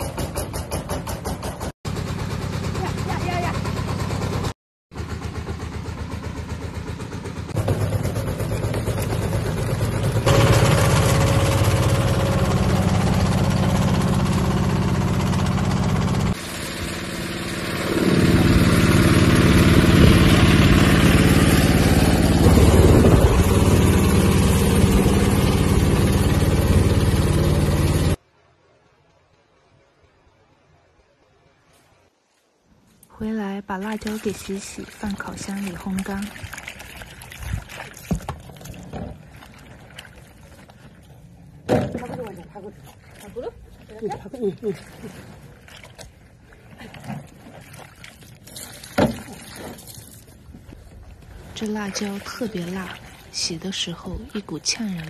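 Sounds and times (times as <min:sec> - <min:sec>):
vehicle engine running: 0:01.9 - 0:28.2.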